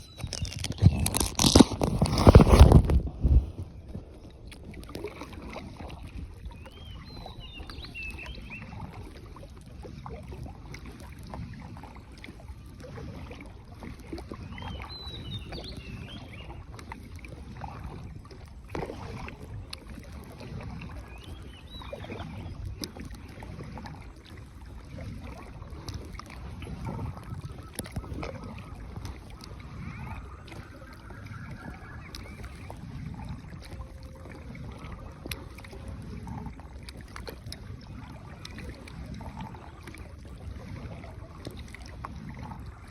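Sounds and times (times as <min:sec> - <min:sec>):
paddle splashing water: 0:00.0 - 0:42.9.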